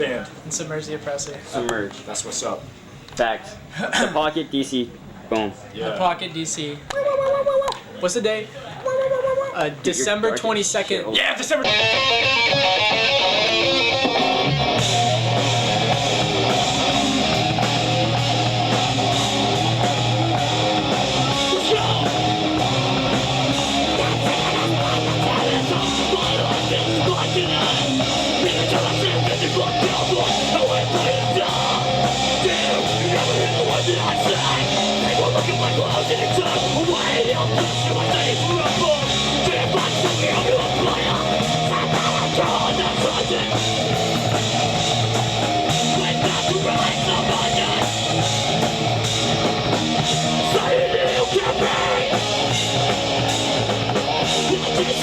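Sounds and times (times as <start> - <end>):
heavy rock music: 11.6 - 55.0
low bass riff: 11.7 - 55.0.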